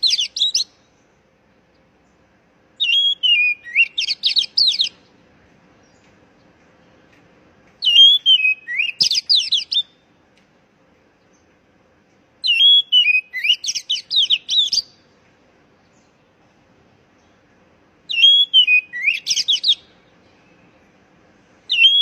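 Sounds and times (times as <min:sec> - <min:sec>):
bird singing whistled phrases: 0:00.0 - 0:00.8, 0:02.8 - 0:05.0, 0:07.8 - 0:10.0, 0:12.4 - 0:15.0, 0:18.1 - 0:20.7, 0:21.7 - 0:22.0.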